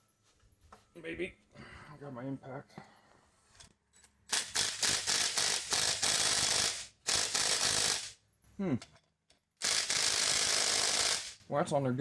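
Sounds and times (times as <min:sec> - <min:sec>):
impact wrench hammering: 0:04.3 - 0:08.2, 0:09.6 - 0:11.4.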